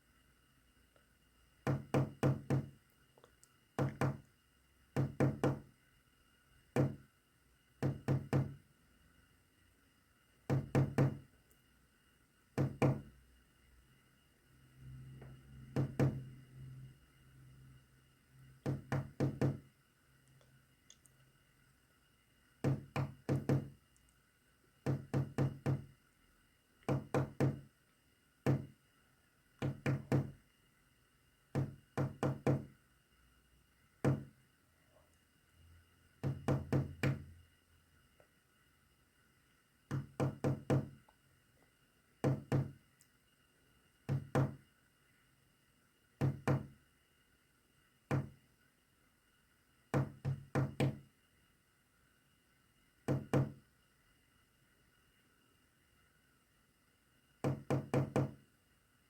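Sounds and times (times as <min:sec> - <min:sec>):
sharp knocks in morse code: 0:03.8 - 0:04.2, 0:24.9 - 0:25.9.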